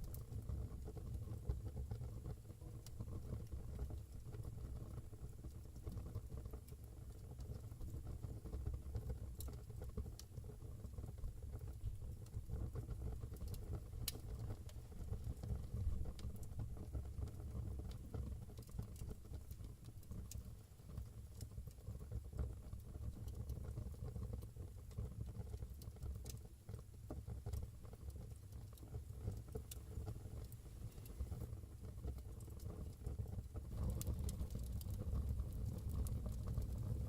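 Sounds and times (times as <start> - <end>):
fire crackling and popping: 0.0 - 37.0
fire rumbling: 27.0 - 37.0.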